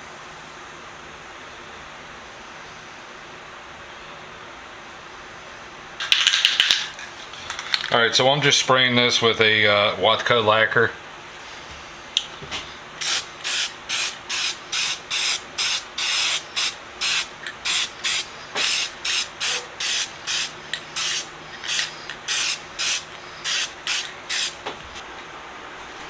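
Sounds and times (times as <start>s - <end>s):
aerosol can spraying bursts: 13.0s - 24.6s.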